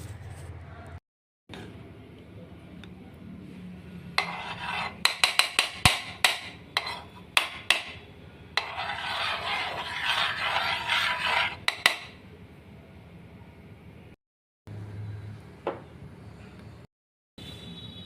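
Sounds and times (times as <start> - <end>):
kitchen utensils scraping: 4.2 - 8.0, 8.6 - 12.2.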